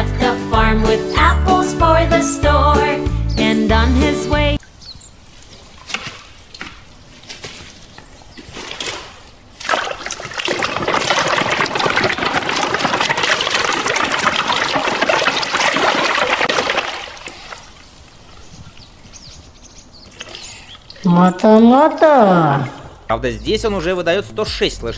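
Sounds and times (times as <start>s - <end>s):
running water splashing: 5.0s - 23.1s
water trickling and dripping: 8.4s - 23.1s.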